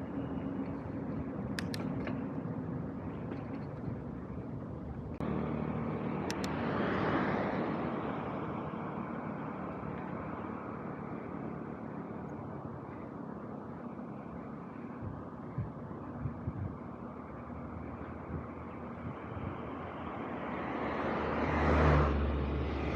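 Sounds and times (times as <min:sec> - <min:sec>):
engine hum: 0:00.0 - 0:22.9
vehicle passing close by: 0:05.2 - 0:12.2, 0:18.2 - 0:22.9.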